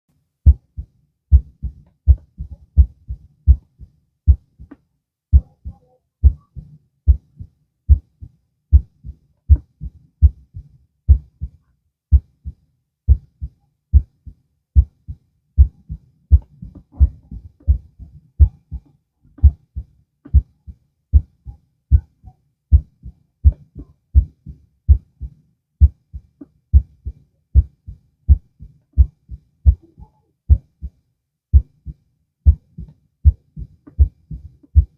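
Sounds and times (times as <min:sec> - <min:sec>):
heartbeat thumps: 0:00.4 - 0:34.9.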